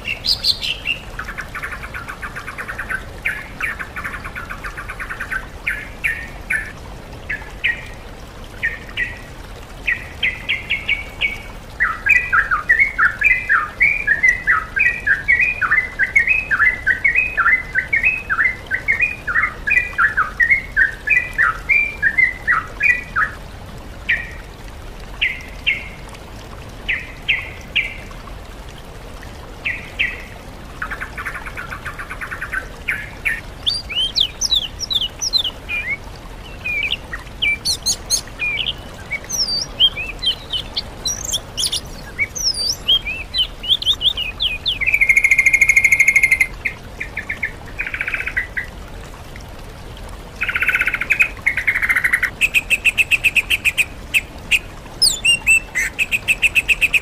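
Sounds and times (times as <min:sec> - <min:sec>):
recorded songbird chirps: 0:00.0 - 0:06.7, 0:30.9 - 0:48.7, 0:50.4 - 0:57.0.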